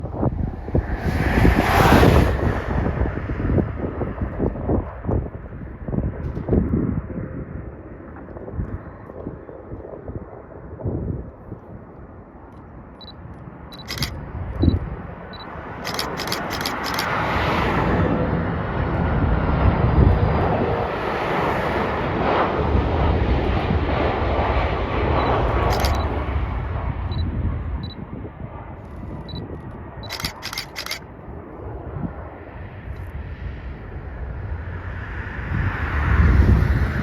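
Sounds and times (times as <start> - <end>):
jet engines roaring: 0.0 - 4.8, 13.1 - 37.0
camera shutter clicks: 13.8 - 14.2, 15.8 - 17.2, 25.2 - 26.2, 30.0 - 31.0.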